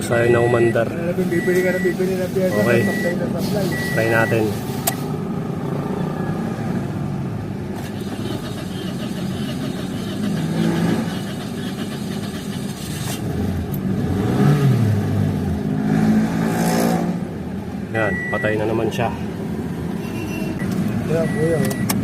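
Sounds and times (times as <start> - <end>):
car engine running roughly: 7.8 - 13.2.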